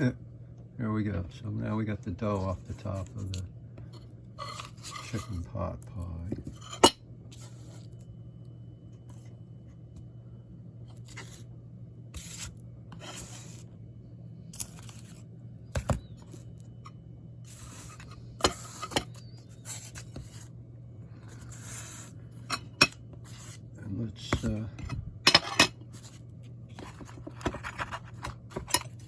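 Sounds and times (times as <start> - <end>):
low hum: 0.0 - 29.0
utensil scraping dish: 4.4 - 5.5, 6.4 - 7.9, 17.5 - 20.5, 24.2 - 26.2.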